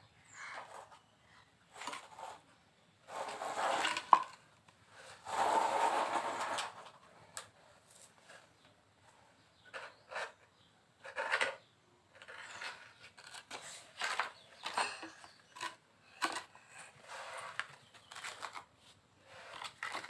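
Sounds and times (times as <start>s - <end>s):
small hard objects clattering: 3.1s - 8.4s, 11.0s - 20.0s.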